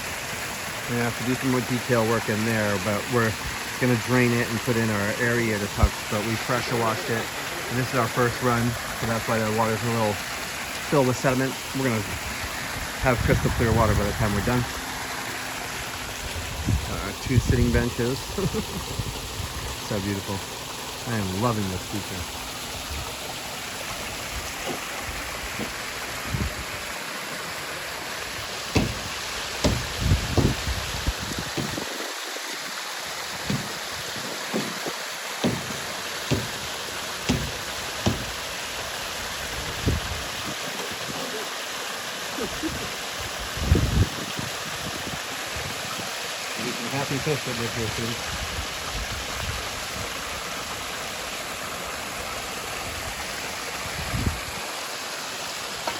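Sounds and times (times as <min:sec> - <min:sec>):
water pouring over stone: 0:00.0 - 0:26.2
waterfall splashing into pond: 0:00.0 - 0:55.9
low thumps: 0:28.7 - 0:31.8, 0:33.4 - 0:36.7, 0:37.3 - 0:38.4.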